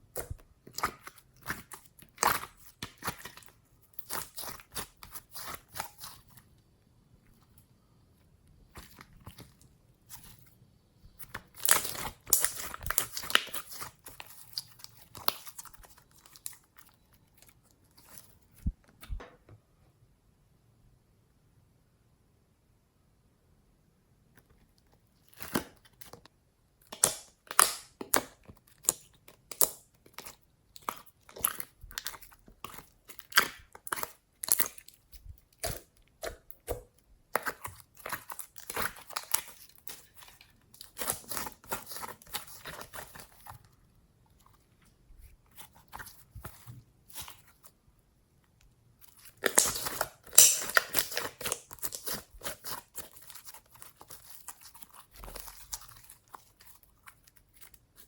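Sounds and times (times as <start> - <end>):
slime crackling pops: 49.4 - 52.2.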